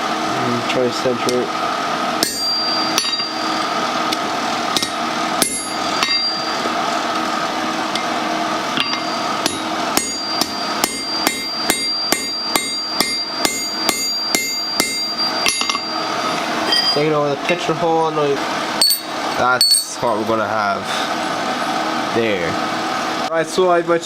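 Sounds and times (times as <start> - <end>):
steady background noise: 0.0 - 24.0
hammer striking metal punch: 2.2 - 3.4, 4.7 - 6.5, 8.8 - 16.0, 18.8 - 20.0.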